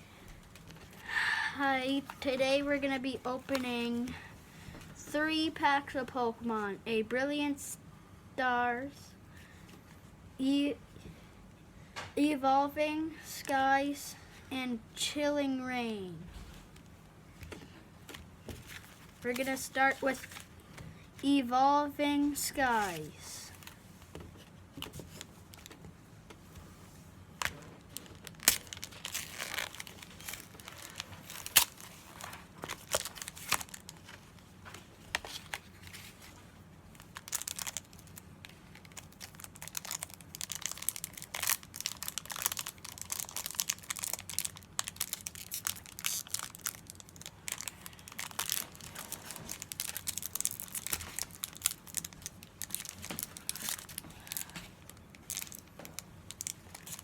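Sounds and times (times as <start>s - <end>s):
foil wrapper crinkling and tearing: 27.4s - 57.0s.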